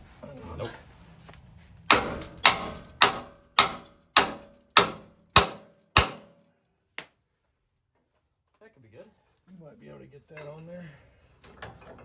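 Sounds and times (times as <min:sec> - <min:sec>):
hammer blows: 0:01.9 - 0:06.4.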